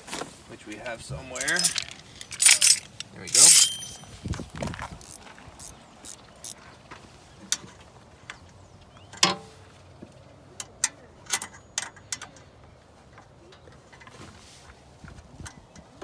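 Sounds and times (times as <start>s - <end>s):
hand tools clicking and clinking: 1.3s - 4.2s, 5.0s - 6.6s.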